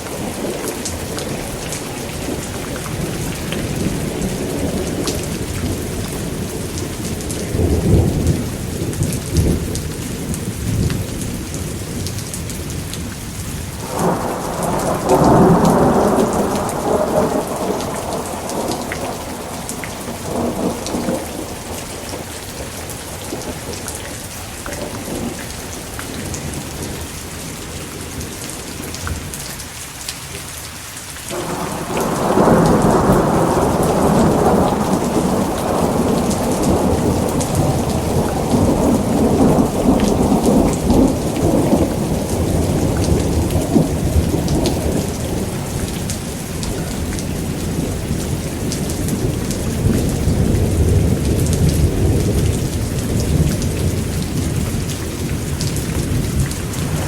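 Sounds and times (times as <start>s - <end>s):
heavy rain hissing: 0.0s - 57.0s
loud thunderclap: 13.8s - 23.8s, 31.3s - 57.0s
thunder rolling: 13.8s - 24.0s, 31.3s - 57.0s.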